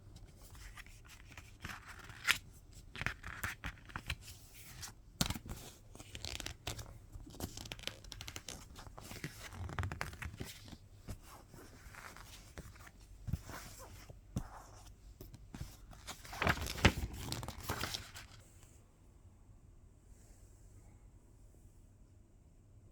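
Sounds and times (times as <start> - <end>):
paper and plastic tearing and crinkling: 16.0 - 18.4.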